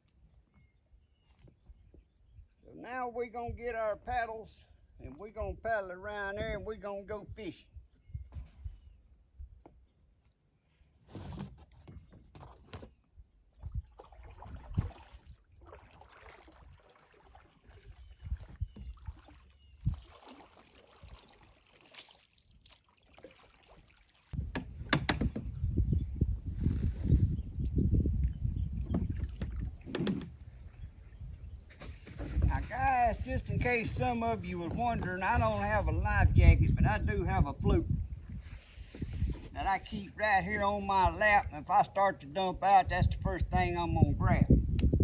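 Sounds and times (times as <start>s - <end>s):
knocks and scrapes on plastic kayak: 10.9s - 13.1s, 28.8s - 30.9s, 31.7s - 35.8s.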